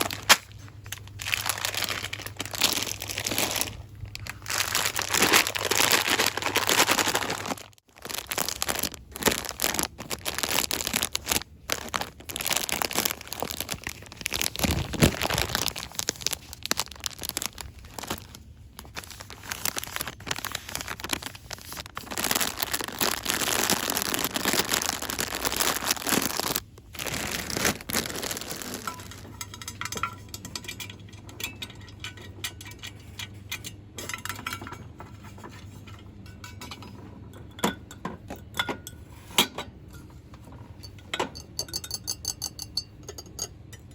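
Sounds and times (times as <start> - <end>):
packaging crinkling: 0.0 - 29.4.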